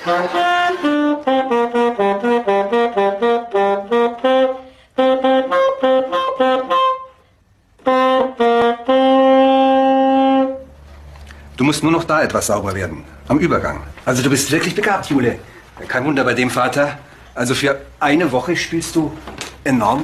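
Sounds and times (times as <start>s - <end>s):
saxophone playing: 0.0s - 11.5s.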